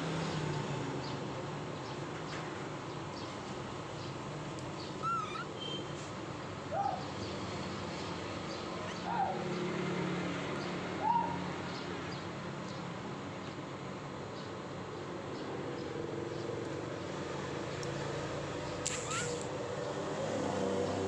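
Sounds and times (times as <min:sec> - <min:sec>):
short animal calls: 0:05.0 - 0:05.7, 0:18.8 - 0:19.5.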